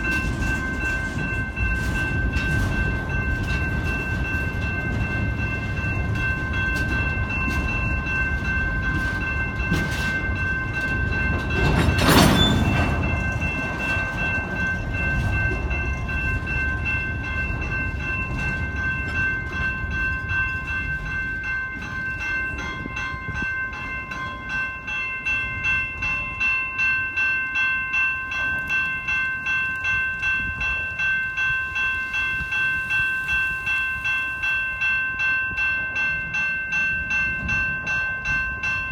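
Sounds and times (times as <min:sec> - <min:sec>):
wheels clickety-clack on rails: 0:00.0 - 0:38.9
train wheels squealing: 0:09.2 - 0:16.6.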